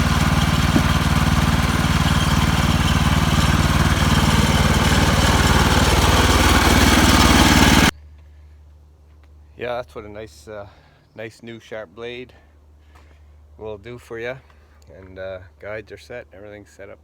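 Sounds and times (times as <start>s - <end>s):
band saw cutting log: 0.0s - 7.9s
gas engine running: 0.0s - 7.9s.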